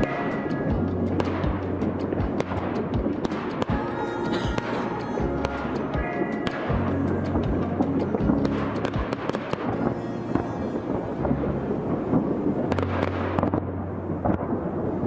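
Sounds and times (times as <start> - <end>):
fireworks bangs and crackles: 0.0 - 15.0
steady rumble: 0.6 - 9.7.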